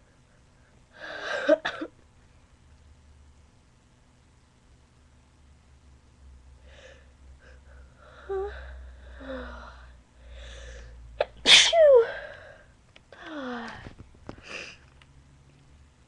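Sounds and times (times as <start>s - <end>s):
breathy voiced breaths: 6.6s - 11.0s
person sneezing loudly: 11.2s - 12.1s.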